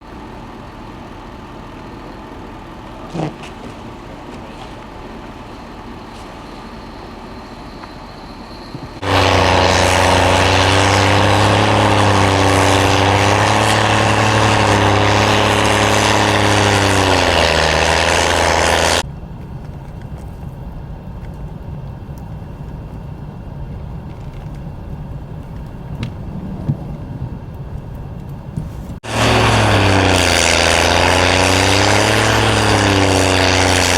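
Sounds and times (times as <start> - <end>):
rumble of vehicles and machinery: 0.0 - 33.9
engine running loudly: 8.8 - 20.4, 22.2 - 33.9.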